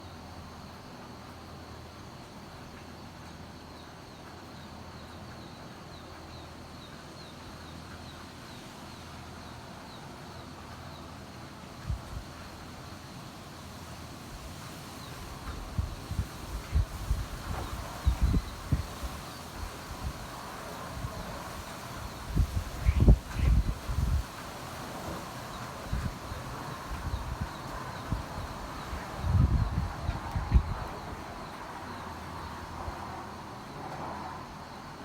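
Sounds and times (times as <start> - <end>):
wind and rain hissing: 0.0 - 35.0
wind gusts buffeting microphone: 11.8 - 12.7, 14.2 - 35.0.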